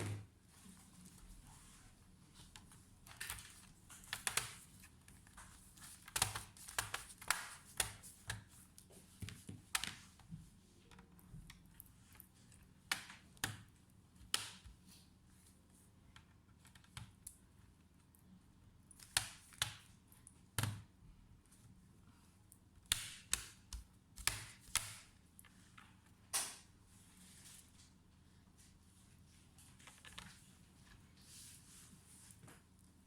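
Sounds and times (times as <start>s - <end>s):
laptop keyboard clicks and taps: 3.1s - 8.5s, 22.8s - 25.1s.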